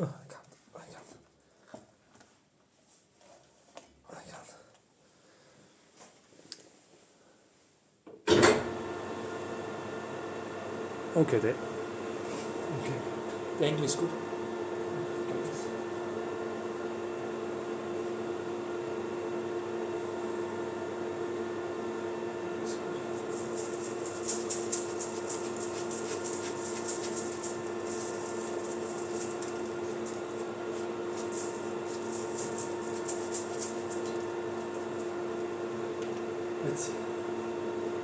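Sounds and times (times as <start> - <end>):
lathe humming: 8.5 - 38.0
high-pitched scratchy rasping: 23.3 - 30.3.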